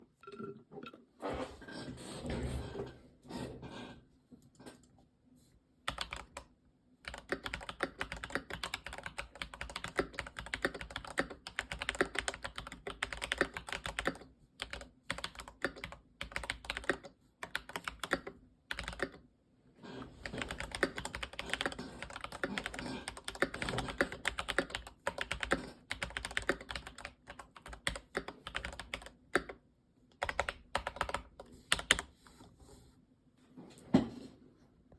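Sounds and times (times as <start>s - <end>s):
mechanical keyboard typing: 5.9s - 19.2s, 20.2s - 29.6s, 30.2s - 32.2s.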